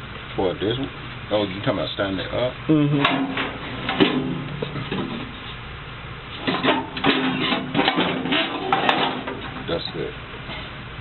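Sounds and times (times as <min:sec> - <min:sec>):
metal knocking and rattling: 0:03.0 - 0:05.4, 0:06.4 - 0:10.0.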